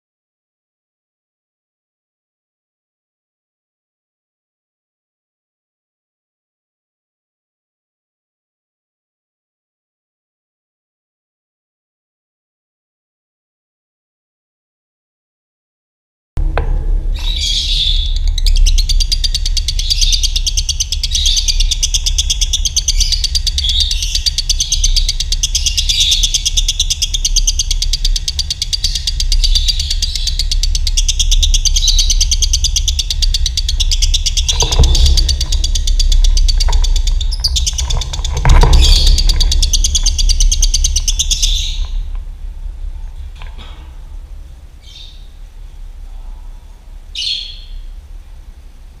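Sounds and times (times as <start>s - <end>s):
knocks: 16.4s - 20.9s, 33.1s - 42.3s
low rumble: 16.4s - 49.0s
birds chattering trill: 17.2s - 48.1s.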